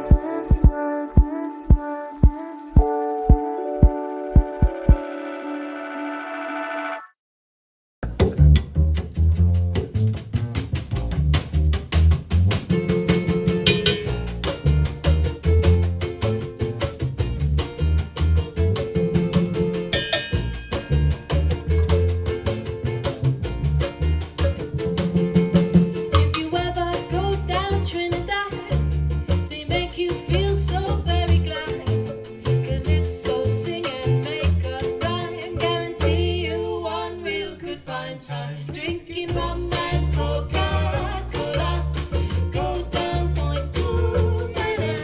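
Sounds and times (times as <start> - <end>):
music with beat and bass: 0.0 - 5.6, 8.0 - 27.9, 39.3 - 45.0
person singing: 0.0 - 5.6, 29.6 - 45.0.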